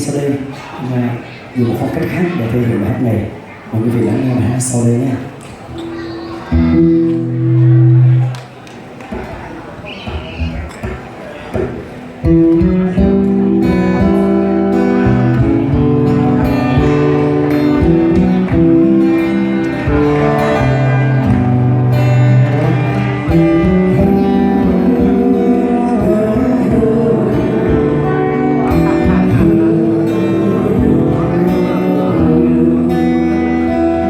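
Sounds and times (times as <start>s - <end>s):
acoustic guitar chords: 5.6s - 34.0s
steady low notes: 11.6s - 34.0s.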